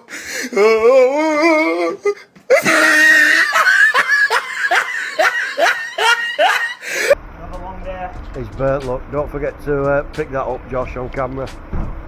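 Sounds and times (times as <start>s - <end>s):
person laughing: 1.5s - 7.2s.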